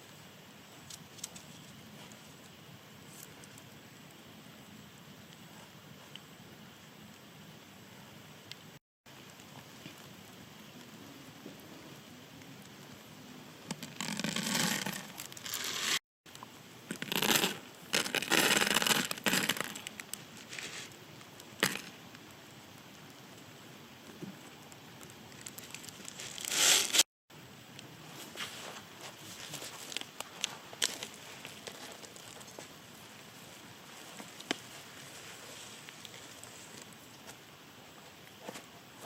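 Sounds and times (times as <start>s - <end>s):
rustling and scraping: 13.7s - 16.0s, 16.9s - 21.0s, 25.4s - 27.1s, 28.1s - 39.0s.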